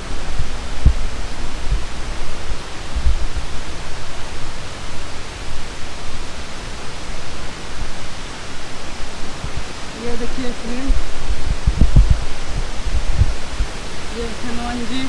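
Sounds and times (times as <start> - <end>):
low thumps on microphone: 0.0 - 3.9, 9.3 - 9.8, 10.9 - 14.1
waterfall roaring: 0.0 - 15.0.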